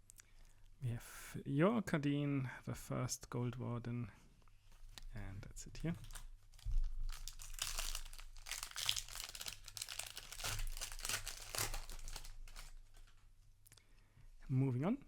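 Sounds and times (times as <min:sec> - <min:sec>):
foil wrapper crinkling and tearing: 0:06.0 - 0:13.2.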